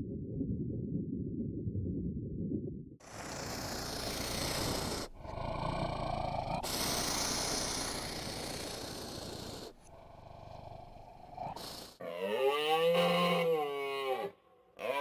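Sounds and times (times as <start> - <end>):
animal vocal sounds: 3.0 - 15.0
pitched animal call: 3.0 - 15.0.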